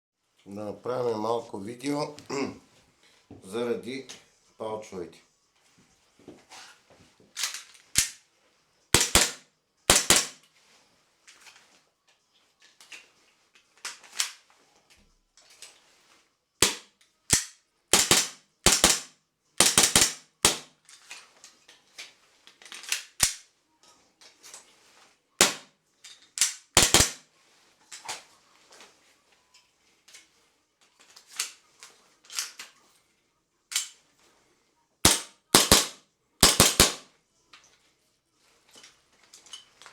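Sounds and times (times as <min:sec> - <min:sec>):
magazine snapping into plastic pouch: 0:07.4 - 0:08.2, 0:16.6 - 0:20.7.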